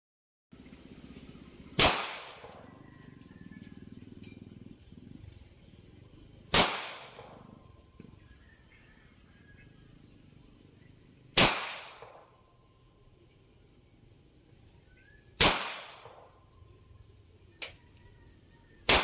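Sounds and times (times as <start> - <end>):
pistol shots with echo: 1.8 - 2.7, 6.5 - 7.4, 11.4 - 12.4, 15.4 - 16.4.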